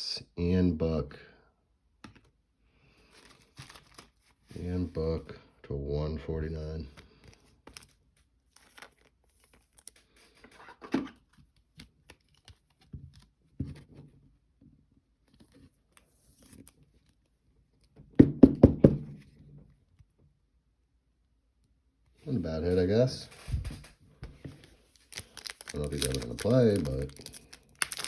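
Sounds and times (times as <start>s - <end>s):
card packaging tearing and crinkling: 3.1s - 4.4s, 7.0s - 10.6s, 24.6s - 28.0s.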